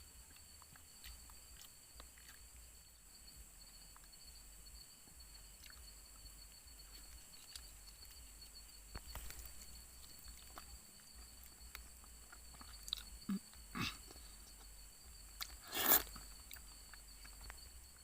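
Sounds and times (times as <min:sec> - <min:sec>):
crickets chirping: 0:00.0 - 0:18.0
faint clicks and rustles: 0:05.7 - 0:18.0.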